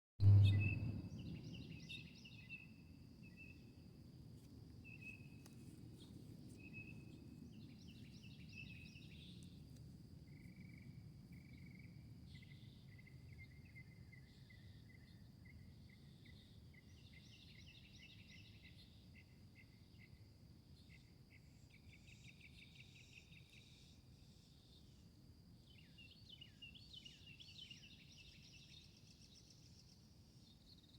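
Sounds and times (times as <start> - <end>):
low background rumble: 0.2 - 1.8
insect drone: 6.5 - 30.9.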